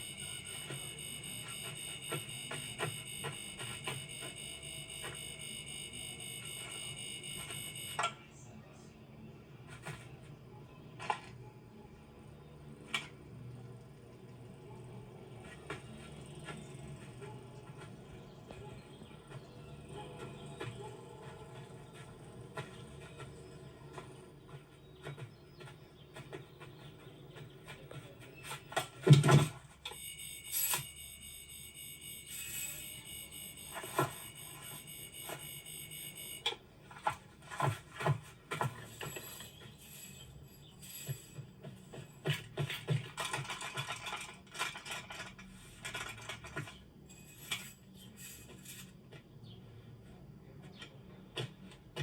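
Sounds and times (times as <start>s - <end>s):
high electronic beeper tone: 0.0s - 8.0s, 29.9s - 36.4s
small clicks and scrapes: 0.0s - 8.2s, 15.3s - 52.0s.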